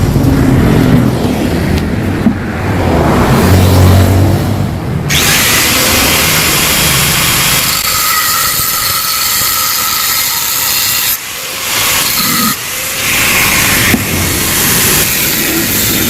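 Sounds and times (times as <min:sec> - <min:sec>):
angle grinder cutting steel: 0:05.1 - 0:16.0.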